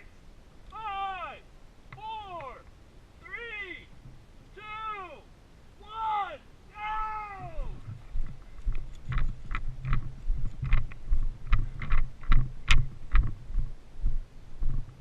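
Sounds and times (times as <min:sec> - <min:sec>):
low thuds with clicks: 0:07.8 - 0:15.0.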